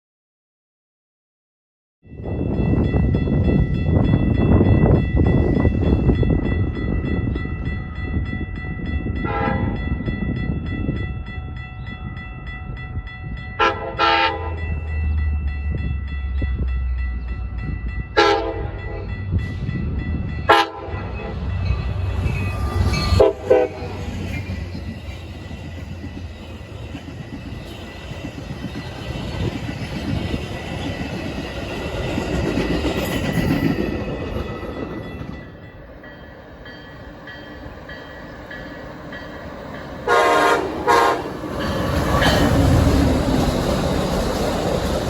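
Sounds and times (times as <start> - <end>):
locomotive rumbling: 2.2 - 45.0
train air horn blasts: 9.2 - 9.8, 13.6 - 14.6, 18.2 - 19.0, 20.5 - 21.1, 23.1 - 24.0, 40.0 - 41.4.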